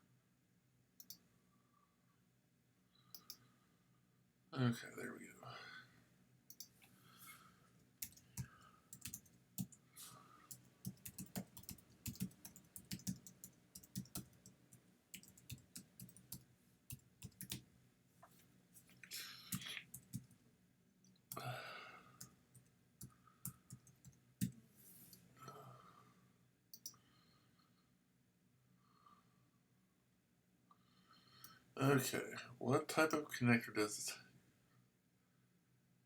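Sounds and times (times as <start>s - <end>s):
typing on computer keyboard: 8.0s - 9.8s, 10.5s - 17.6s, 19.4s - 20.4s, 23.4s - 24.6s.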